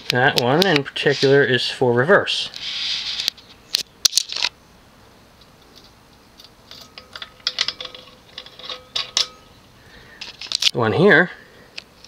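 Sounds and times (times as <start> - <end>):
metal chains and glass fobs rattling: 6.7 - 9.6.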